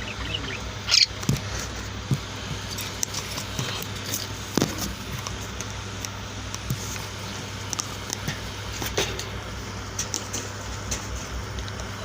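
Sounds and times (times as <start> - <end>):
birds chirping: 0.0 - 4.2
steady low hum: 0.0 - 12.0.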